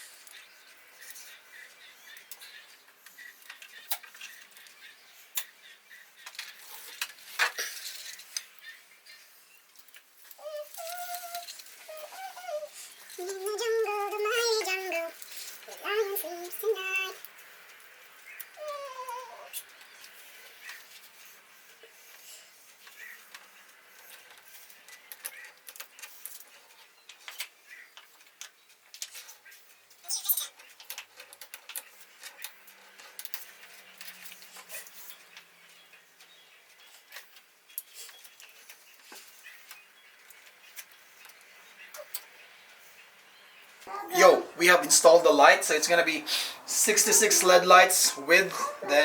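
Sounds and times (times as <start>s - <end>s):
clicks and rustles of handling: 6.2s - 8.8s, 9.7s - 42.8s.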